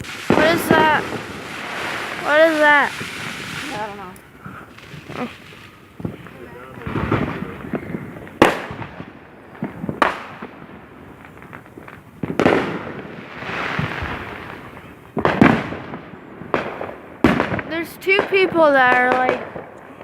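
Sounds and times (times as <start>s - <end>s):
firework hissing trail: 0.0s - 19.7s
fireworks bangs: 0.0s - 20.0s
fireworks pops: 0.0s - 20.0s.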